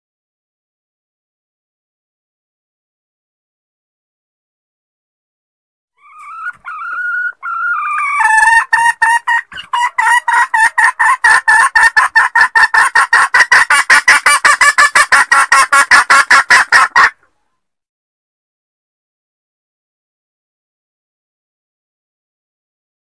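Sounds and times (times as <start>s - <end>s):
hen calling with rapid clucks: 6.0s - 17.4s.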